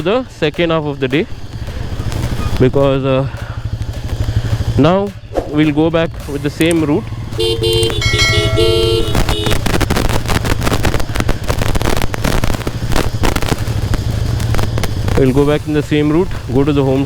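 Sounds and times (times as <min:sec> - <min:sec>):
motorcycle engine running: 0:00.0 - 0:17.0
rattling and tyre noise: 0:00.0 - 0:17.0
steady held tones: 0:06.7 - 0:09.6.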